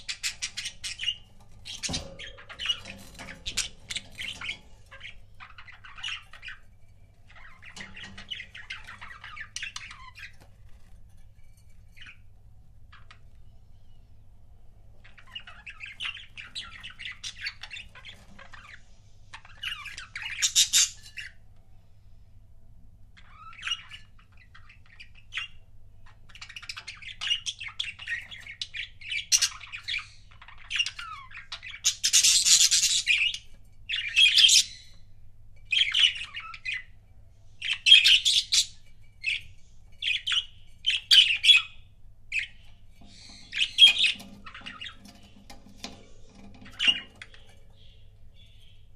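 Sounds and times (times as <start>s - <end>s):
budgerigars chattering: 37.6s - 39.4s, 40.0s - 48.8s.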